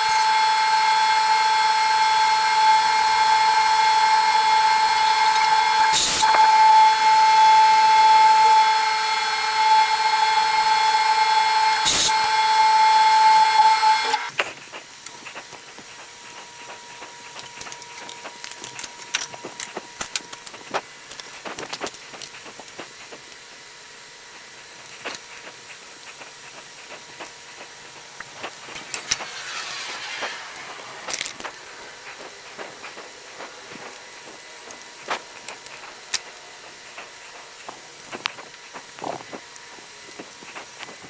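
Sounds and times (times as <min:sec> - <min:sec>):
short hiss: 0:27.2 - 0:35.5.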